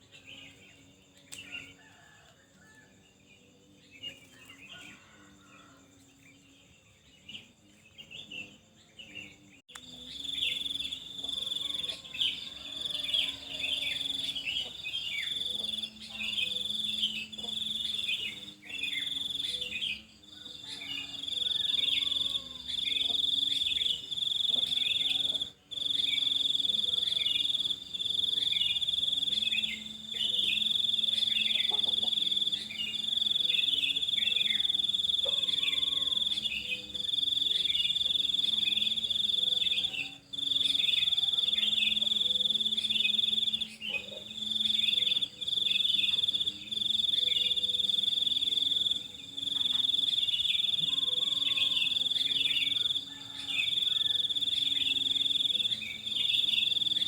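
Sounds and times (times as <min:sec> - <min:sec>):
cricket-like insect trill: 0:00.0 - 0:57.0
small birds chirping: 0:06.1 - 0:57.0.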